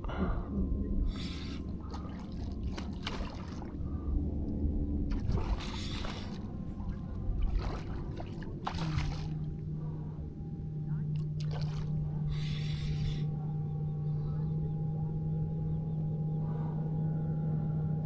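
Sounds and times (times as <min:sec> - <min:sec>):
water splashing and sloshing: 0:01.1 - 0:10.1, 0:11.1 - 0:13.3.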